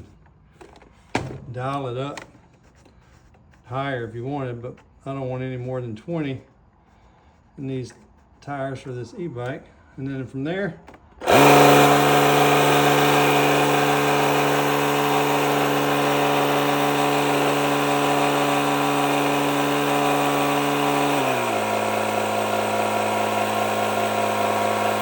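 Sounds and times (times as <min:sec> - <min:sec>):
air compressor motor humming: 0:11.2 - 0:25.0.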